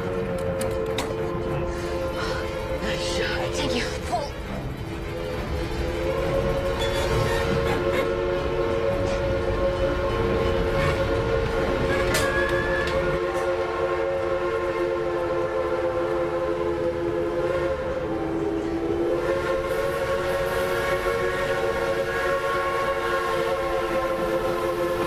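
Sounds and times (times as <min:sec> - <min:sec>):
train whistle chord: 0:00.0 - 0:25.0.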